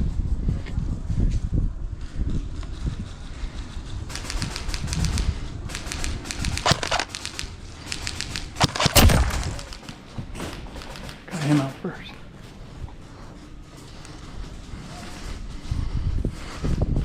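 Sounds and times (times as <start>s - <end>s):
airsoft rifle firing bursts: 4.1s - 11.7s
heavy thump: 8.6s - 11.2s.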